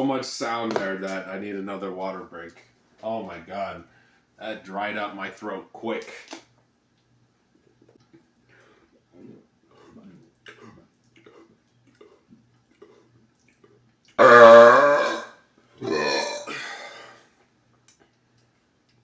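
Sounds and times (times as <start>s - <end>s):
man burping loudly: 14.2s - 16.7s.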